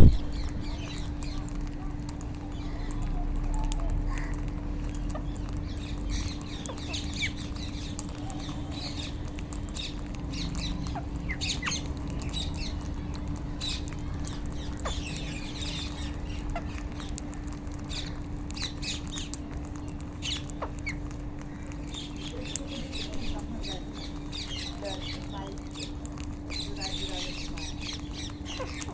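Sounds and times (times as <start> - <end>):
parakeets chattering: 0.0 - 28.9
steady low hum: 0.0 - 28.9.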